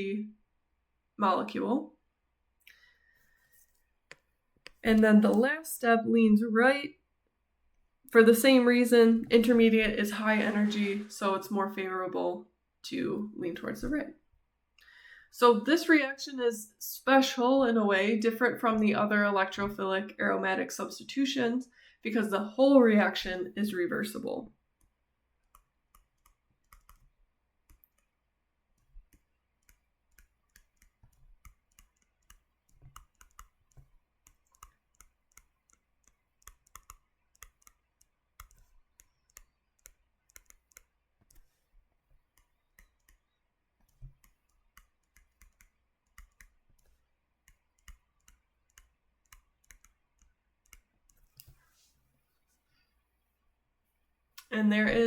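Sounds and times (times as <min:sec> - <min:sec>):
stylus tapping on tablet screen: 0:04.1 - 0:05.5, 0:24.8 - 0:28.2, 0:28.8 - 0:51.6.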